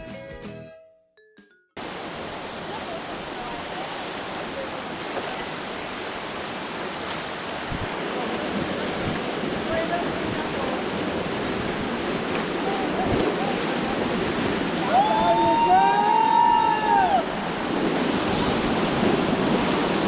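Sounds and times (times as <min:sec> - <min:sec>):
rushing whitewater: 0:01.8 - 0:20.0
wind on microphone: 0:05.0 - 0:20.0
people whooping shout: 0:14.8 - 0:17.4.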